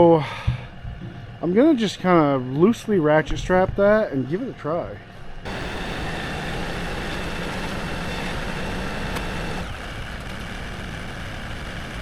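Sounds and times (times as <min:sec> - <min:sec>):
tractor engine running: 0:05.4 - 0:12.0.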